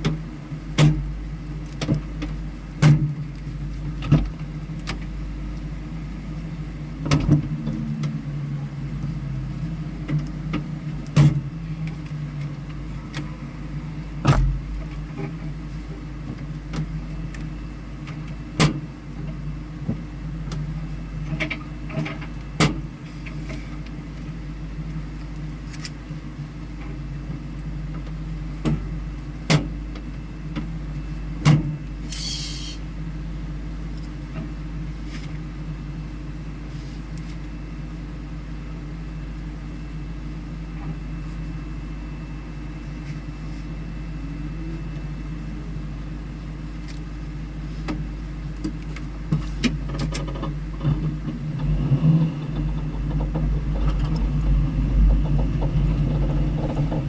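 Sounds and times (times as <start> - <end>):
vehicle engine running steadily: 0.0 - 57.0
sharp clicks and knocks: 1.7 - 3.4, 48.6 - 57.0
short hiss: 32.1 - 32.8.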